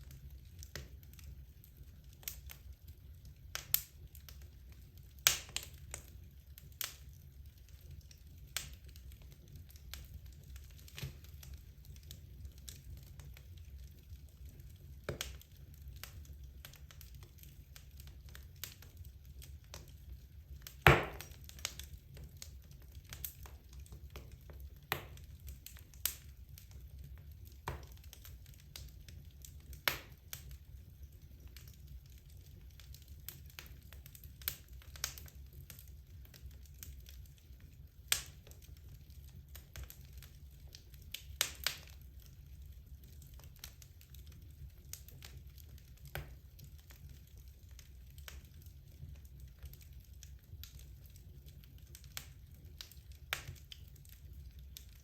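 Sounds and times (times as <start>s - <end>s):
logs crackling in a fireplace: 0.0s - 55.0s
low steady fire rumble: 0.0s - 55.0s
sharp pops of burning wood: 5.2s - 6.1s, 8.0s - 12.2s, 14.9s - 30.6s, 38.1s - 38.7s, 40.7s - 42.0s.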